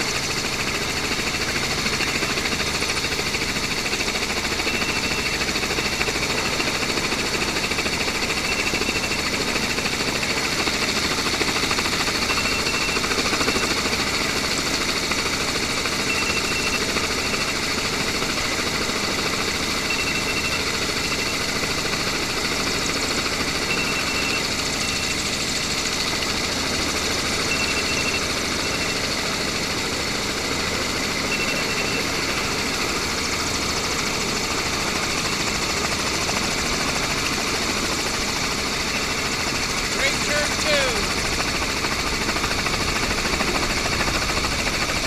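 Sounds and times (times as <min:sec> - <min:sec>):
mechanical engine hum: 0:00.0 - 0:45.0
high double beep: 0:19.9 - 0:20.6, 0:31.3 - 0:32.1.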